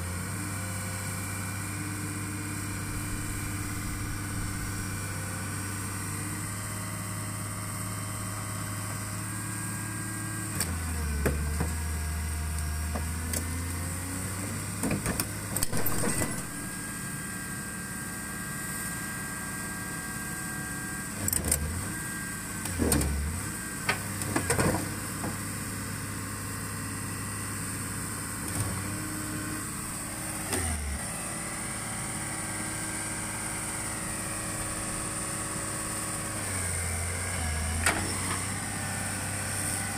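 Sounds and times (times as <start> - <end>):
excavator diesel engine running: 0.0 - 39.9
loud knocks and metal clanks: 14.9 - 16.6.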